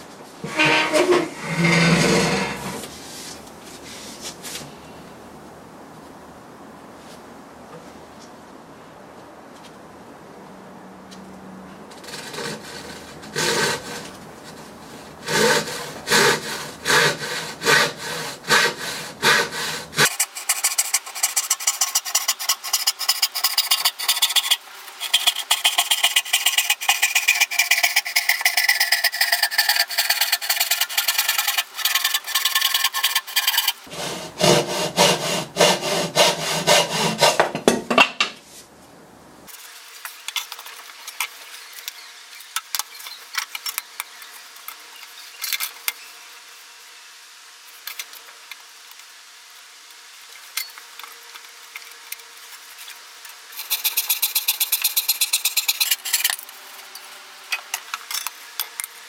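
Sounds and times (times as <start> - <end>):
hand saw cutting wood: 12.0 - 14.6, 15.2 - 37.5, 53.6 - 56.4.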